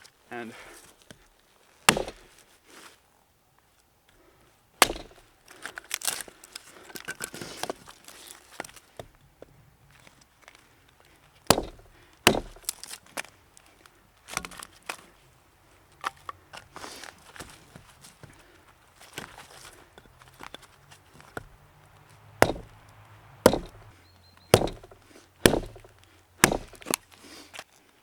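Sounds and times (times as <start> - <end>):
axe chopping wood: 1.9 - 2.4, 4.8 - 5.4, 11.5 - 12.8, 22.4 - 23.9, 24.5 - 27.0
wood knocking and rustling: 4.8 - 5.3, 11.5 - 13.0, 17.4 - 23.9, 24.5 - 27.0.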